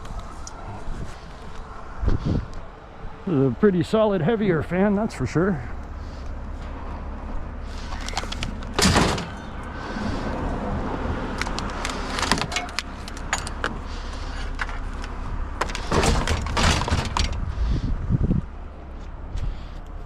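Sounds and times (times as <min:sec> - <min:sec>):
steady low rumble: 0:00.0 - 0:20.0
metal knocks and clanks: 0:08.0 - 0:09.7, 0:15.6 - 0:17.4.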